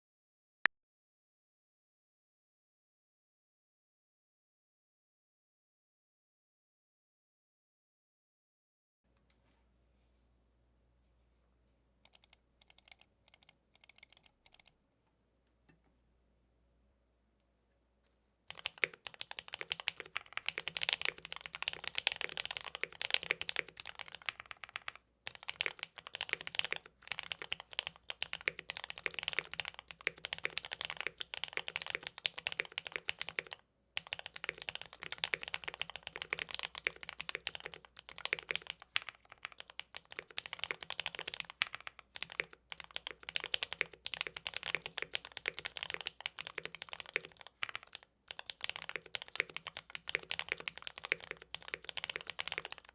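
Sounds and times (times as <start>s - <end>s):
fast typing on mechanical keyboard: 12.1s - 14.7s, 18.5s - 52.9s.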